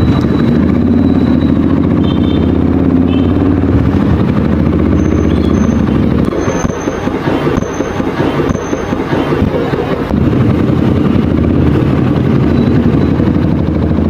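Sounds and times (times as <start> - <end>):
motorcycle engine drone: 0.0 - 14.0.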